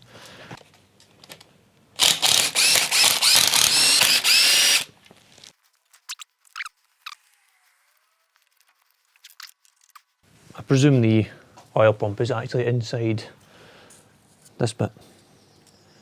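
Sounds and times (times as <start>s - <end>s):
power tool undoing bolts: 2.0s - 4.9s.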